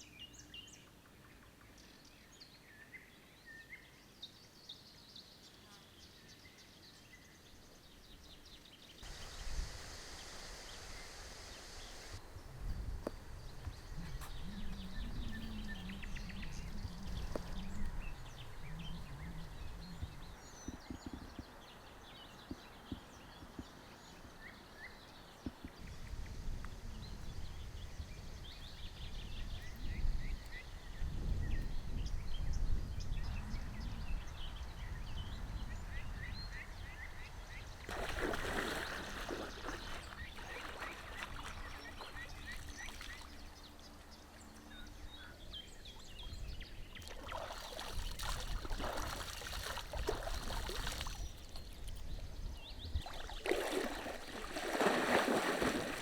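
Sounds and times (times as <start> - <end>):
small birds chirping: 0.0 - 56.0
short burst of hiss: 9.0 - 12.2.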